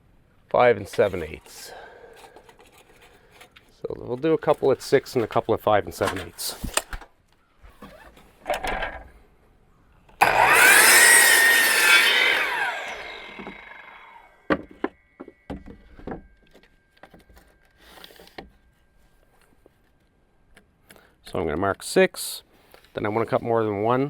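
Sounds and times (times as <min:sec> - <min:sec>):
power saw cutting wood: 0:10.2 - 0:14.3
saw blade spinning down whine: 0:10.2 - 0:14.4.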